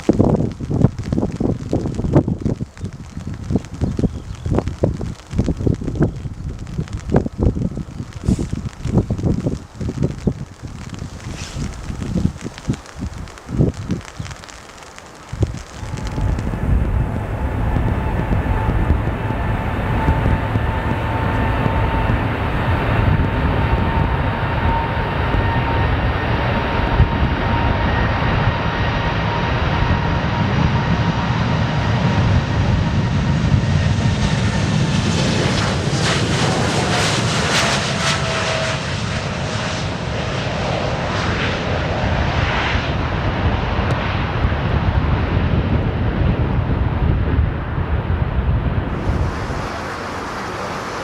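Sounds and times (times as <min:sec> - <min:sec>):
airliner engines passing: 0:00.0 - 0:51.0
loud hiss: 0:48.9 - 0:51.0.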